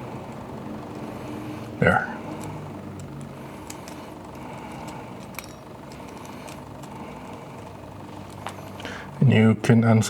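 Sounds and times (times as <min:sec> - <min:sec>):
light clicks and clinks: 0:02.4 - 0:07.0.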